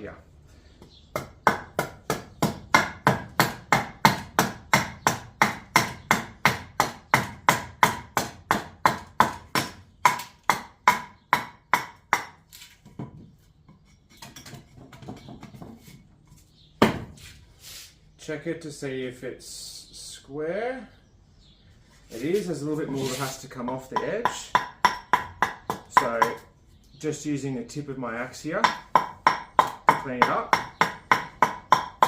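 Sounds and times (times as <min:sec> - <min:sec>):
axe chopping wood: 0:01.2 - 0:12.4, 0:16.8 - 0:17.2.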